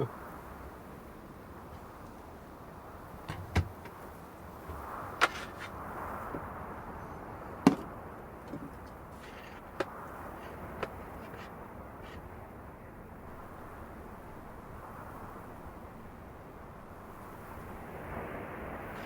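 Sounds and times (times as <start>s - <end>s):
sharp knocks: 3.2s - 4.0s, 7.6s - 7.9s, 8.5s - 11.5s.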